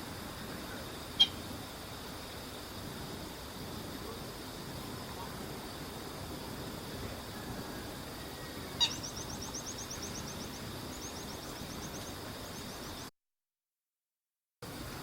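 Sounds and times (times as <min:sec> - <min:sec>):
bird sharp call: 0:08.4 - 0:10.4
bird high chirps: 0:08.4 - 0:13.0.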